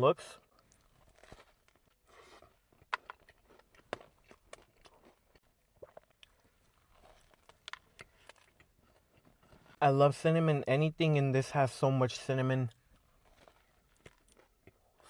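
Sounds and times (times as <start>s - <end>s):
person chewing food: 0.4s - 9.8s, 12.8s - 15.0s.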